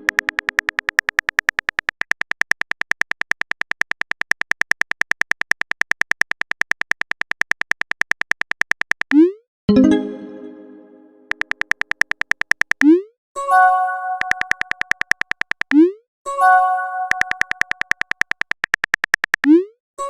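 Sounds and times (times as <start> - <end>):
rapid keyboard typing clicks: 0.0 - 9.3, 11.3 - 13.0, 14.2 - 15.9, 17.1 - 19.6
chime alert: 9.7 - 11.3.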